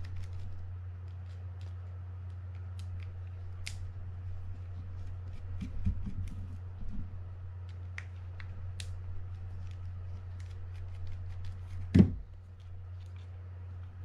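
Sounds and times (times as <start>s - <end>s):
steady low hum: 0.0s - 14.0s
loud knock: 11.9s - 12.3s.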